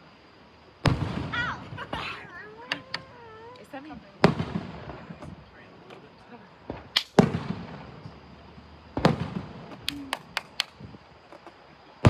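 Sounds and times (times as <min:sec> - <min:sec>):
firework sharp cracks: 0:00.8 - 0:02.1, 0:04.2 - 0:05.5, 0:06.6 - 0:11.5
firework deep boom: 0:00.9 - 0:01.9, 0:06.7 - 0:08.2.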